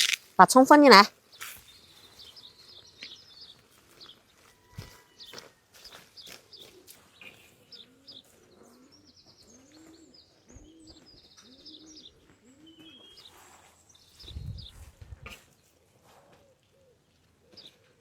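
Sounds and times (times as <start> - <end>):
small birds chirping: 0.0 - 15.8
low cooing bird call: 7.3 - 13.5.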